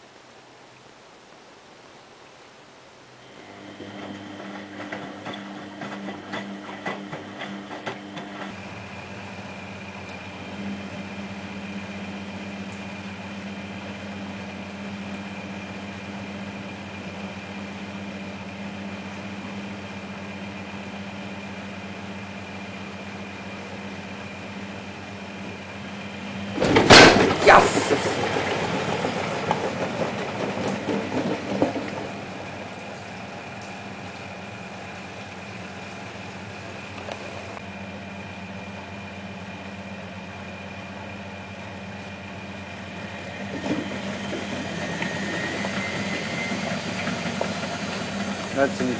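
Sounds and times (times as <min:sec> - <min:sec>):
washing machine running: 0:03.2 - 0:48.9
knocking and clattering: 0:04.4 - 0:08.6, 0:26.6 - 0:32.3.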